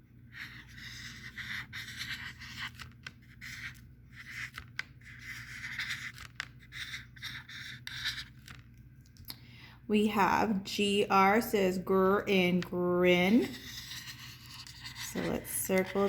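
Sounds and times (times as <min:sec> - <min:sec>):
pen scratching on paper: 0:00.3 - 0:08.5, 0:13.4 - 0:16.0.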